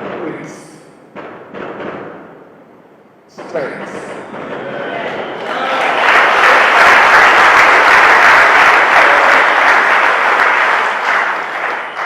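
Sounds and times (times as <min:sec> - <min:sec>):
congregation applauding and cheering: 0:04.6 - 0:12.0.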